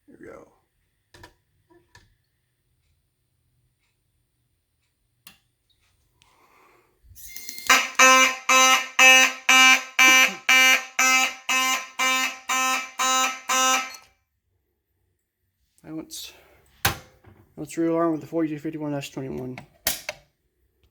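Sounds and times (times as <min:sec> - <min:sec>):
fire alarm horn blasts: 0:07.3 - 0:14.1.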